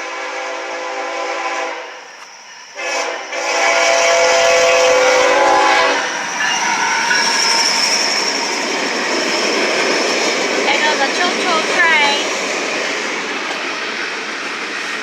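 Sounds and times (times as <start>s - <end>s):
train horn blast: 0.0s - 2.0s, 2.8s - 6.2s
train rolling noise: 0.0s - 15.0s.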